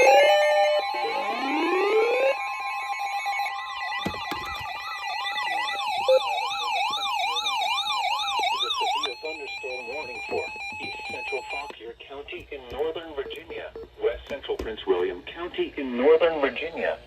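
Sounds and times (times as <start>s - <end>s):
rising siren wails: 0.0s - 11.7s
siren warbling: 0.0s - 11.7s
steady high alert tone: 0.0s - 11.8s.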